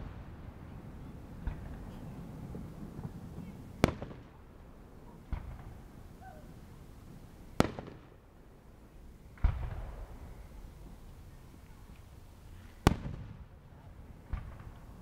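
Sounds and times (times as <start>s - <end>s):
fireworks bangs: 0.0s - 4.4s, 5.0s - 8.1s, 9.3s - 11.1s, 11.8s - 13.6s, 14.2s - 15.0s.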